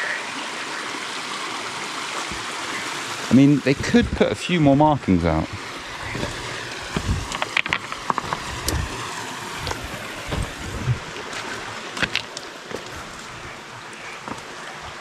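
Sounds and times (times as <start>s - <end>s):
stream running over rocks: 0.0s - 15.0s
boots knocking on stones: 5.6s - 13.4s
footsteps: 5.6s - 13.6s.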